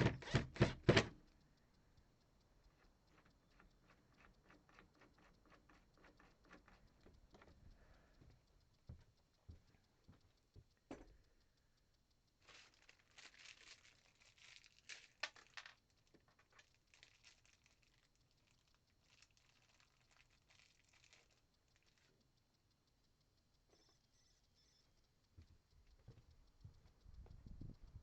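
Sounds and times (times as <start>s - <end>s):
crinkling and crackling: 2.4s - 22.8s.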